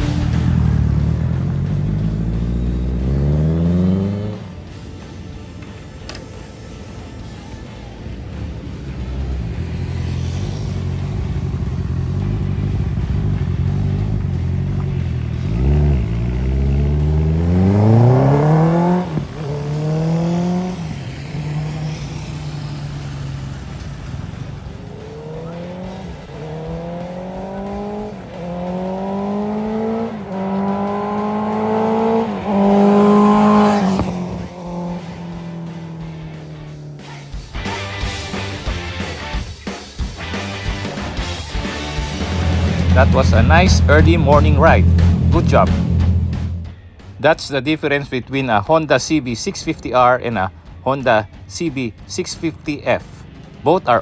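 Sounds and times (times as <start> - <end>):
motorcycle engine idling: 0.0 - 39.4, 40.0 - 47.1
motorcycle accelerating through gears: 0.0 - 39.5, 40.2 - 47.1.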